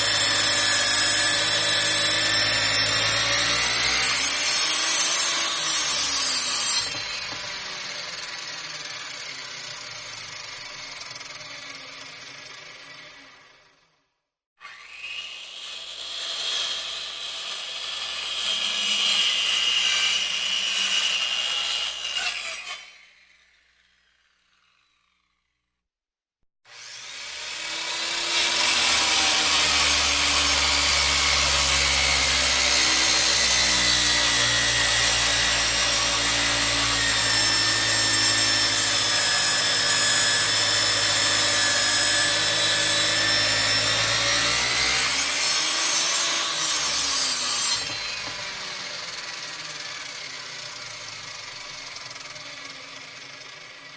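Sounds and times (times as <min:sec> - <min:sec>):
power tool whining: 0:00.0 - 0:13.5, 0:26.7 - 0:53.9.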